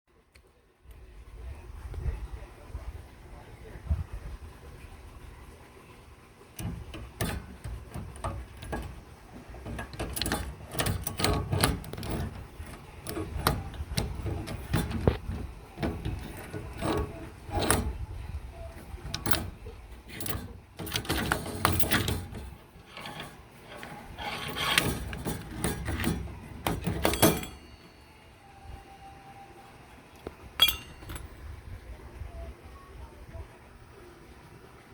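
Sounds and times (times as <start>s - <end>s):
slide hammer clanking on metal: 6.6s - 18.0s, 18.7s - 28.0s, 30.6s - 31.3s
metal scraping: 6.6s - 28.1s, 30.6s - 31.3s.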